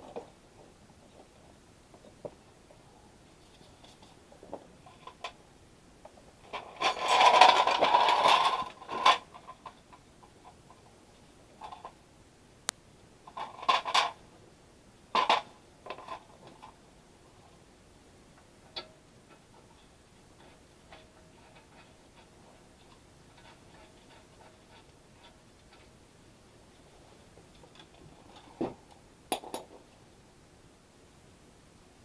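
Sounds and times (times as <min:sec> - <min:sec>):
hand tools clicking and scraping metal: 0:06.4 - 0:10.8, 0:18.7 - 0:26.0.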